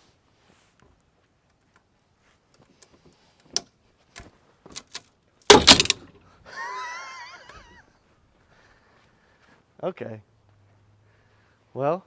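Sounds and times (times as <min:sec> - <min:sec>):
wood creaking and snapping: 0:04.2 - 0:06.2
wood splitting with loud cracks: 0:04.7 - 0:06.2.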